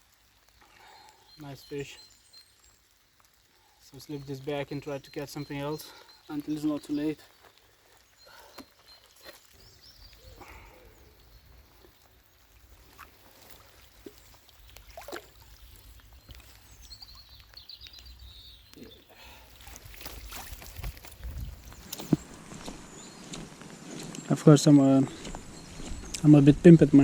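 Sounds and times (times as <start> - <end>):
bird chirping: 0.6 - 2.9, 3.7 - 13.4, 14.0 - 27.0
wind rumbling on microphone: 19.8 - 24.3, 25.1 - 27.0.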